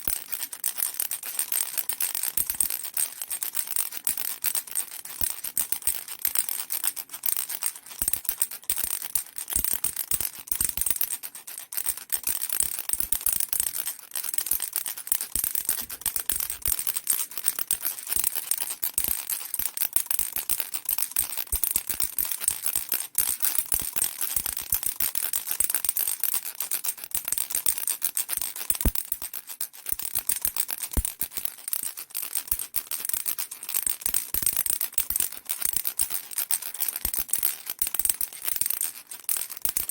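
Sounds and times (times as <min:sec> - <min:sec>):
baby rattle shaking: 0:08.0 - 0:39.9.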